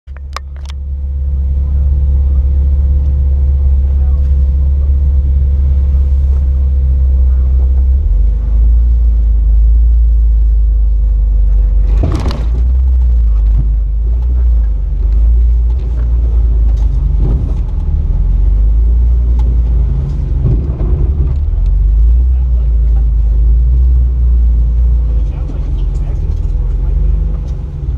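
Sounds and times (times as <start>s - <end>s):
engine running with low rumble: 0.0s - 27.9s.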